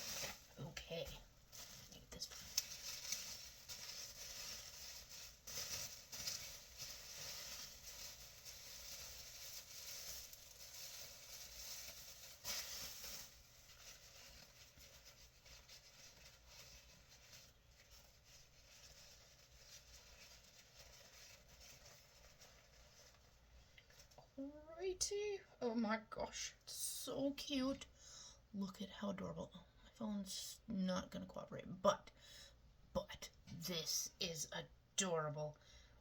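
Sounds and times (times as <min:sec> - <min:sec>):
packaging rustling: 0:00.0 - 0:24.2.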